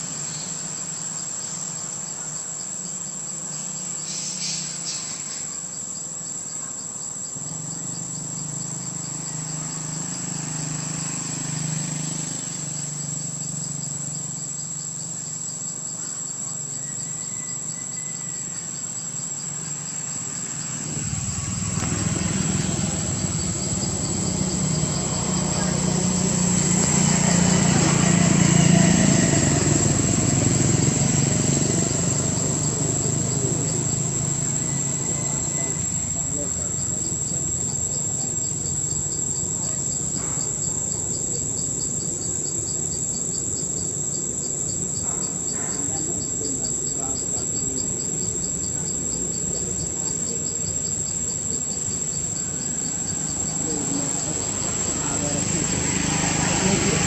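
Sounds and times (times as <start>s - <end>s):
insects calling drone: 0.0s - 57.0s
low rumble: 20.8s - 24.7s.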